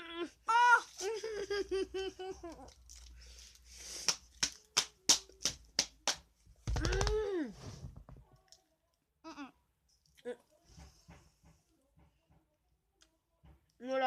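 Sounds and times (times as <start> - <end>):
person crying out: 0.0 - 1.0.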